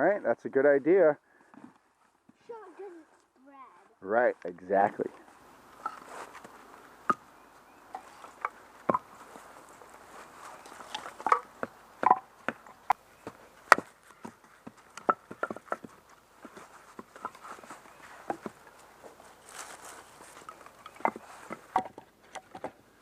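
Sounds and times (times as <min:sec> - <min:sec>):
dry leaves and twigs crackling: 0:04.8 - 0:23.0.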